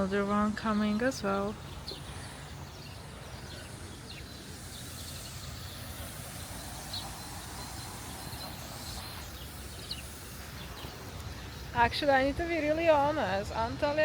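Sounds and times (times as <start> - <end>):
outdoor background noise: 0.0 - 14.0
short bird chirps: 1.7 - 11.0.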